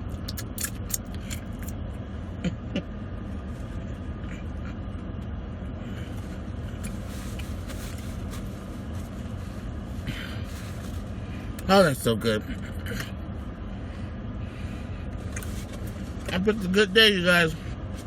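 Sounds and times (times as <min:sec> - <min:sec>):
steady low rumble: 0:00.0 - 0:18.0
chewing: 0:00.1 - 0:01.7
sharp mouth clicks: 0:00.1 - 0:01.7.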